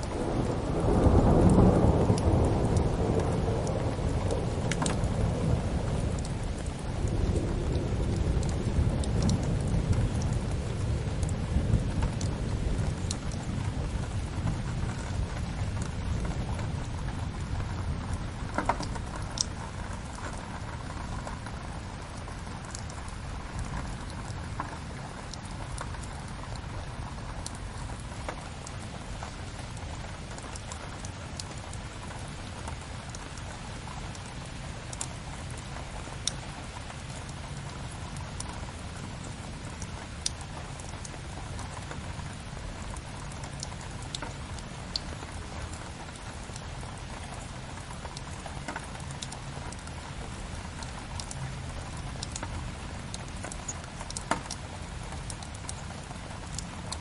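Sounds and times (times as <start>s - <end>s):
wood fire crackling: 0.0s - 26.7s, 27.4s - 57.0s
steady rain hiss: 0.0s - 57.0s.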